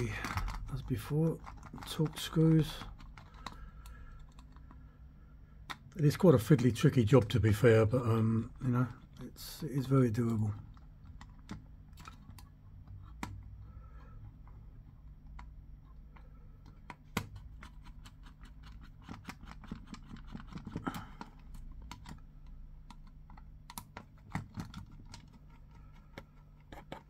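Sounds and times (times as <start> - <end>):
screwdriver and plastic parts clicking: 0.0 - 4.8, 10.6 - 27.0.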